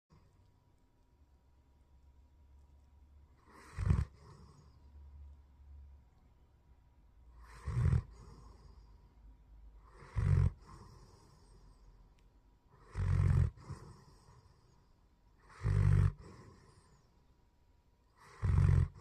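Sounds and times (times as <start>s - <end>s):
dog breathing softly: 3.3s - 5.3s, 7.3s - 17.3s
dog snoring: 3.4s - 4.9s, 7.3s - 9.1s, 9.8s - 11.9s, 12.7s - 17.1s, 18.1s - 19.0s.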